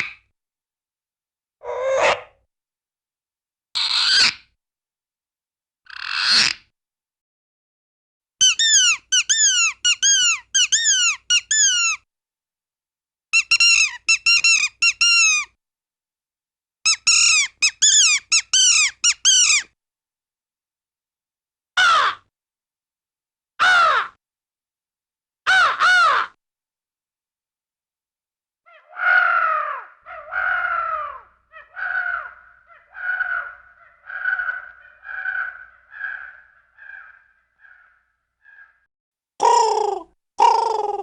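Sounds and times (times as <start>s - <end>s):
bird calling falling notes: 28.7s - 38.8s.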